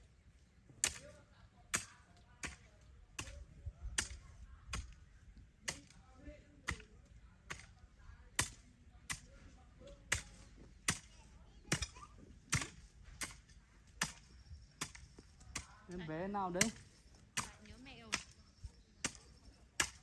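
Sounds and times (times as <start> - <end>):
hand tool striking: 16.6 - 18.4, 19.0 - 20.0.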